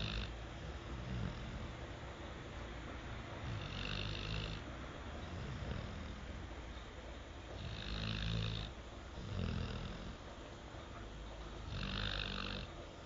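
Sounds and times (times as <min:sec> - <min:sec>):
person snoring: 0:00.0 - 0:01.7, 0:03.4 - 0:04.6, 0:07.6 - 0:10.2, 0:11.7 - 0:12.7.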